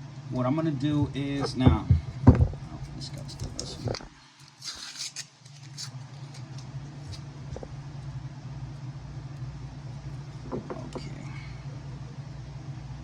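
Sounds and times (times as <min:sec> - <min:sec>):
steady low hum: 0:00.0 - 0:13.0
plastic wrap crinkling: 0:02.5 - 0:07.3.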